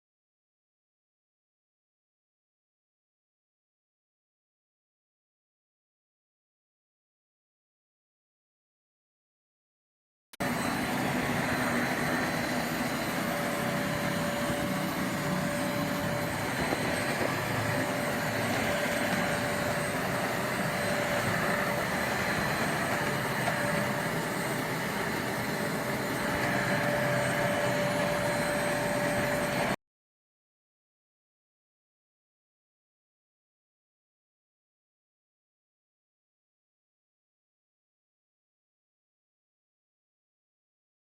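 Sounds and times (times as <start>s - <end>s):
handheld vacuum cleaner running: 10.4s - 29.8s.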